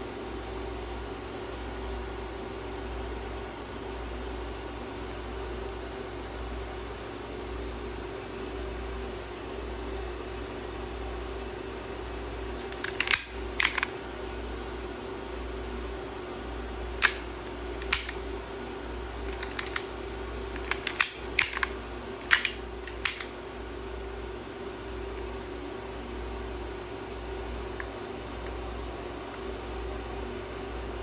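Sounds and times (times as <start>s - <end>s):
bb pistol clicks and snaps: 12.6s - 13.9s, 17.0s - 18.3s, 19.2s - 19.9s, 20.5s - 23.4s.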